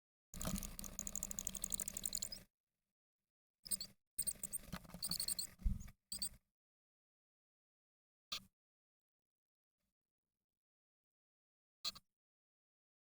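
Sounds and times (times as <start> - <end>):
nestlings high-pitched squeaky calls: 4.2 - 5.5.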